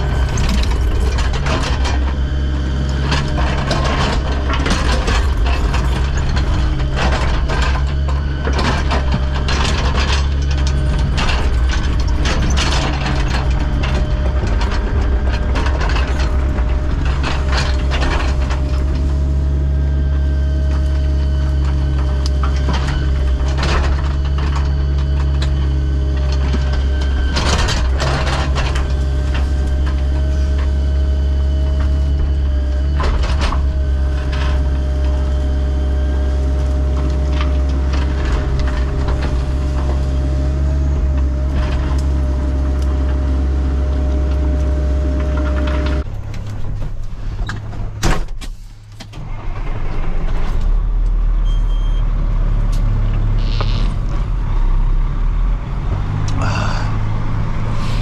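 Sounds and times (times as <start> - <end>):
metal clanks and rattles: 0.0 - 19.9, 21.5 - 35.6, 36.4 - 43.3
heavy machine engine running: 0.0 - 58.0.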